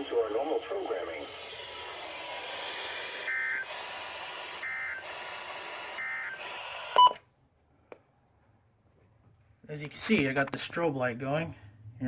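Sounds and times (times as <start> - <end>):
radio static hiss: 0.0 - 7.2
data tone bursts: 3.1 - 7.2.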